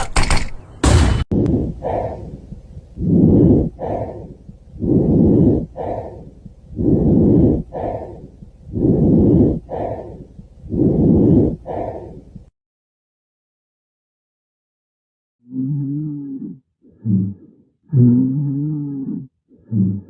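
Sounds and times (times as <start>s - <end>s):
breathing through a stethoscope: 3.0s - 12.5s.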